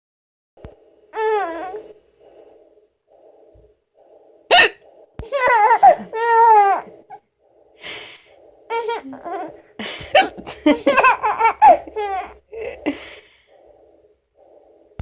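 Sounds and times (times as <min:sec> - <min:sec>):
baby laughing: 0:04.5 - 0:06.9, 0:10.2 - 0:13.0.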